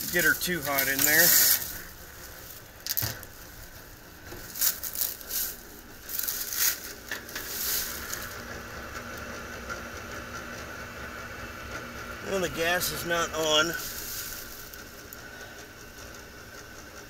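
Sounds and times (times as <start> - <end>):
rattling and scraping handling noises: 0.0 - 10.7, 12.9 - 16.9
steady low hum: 0.0 - 17.0.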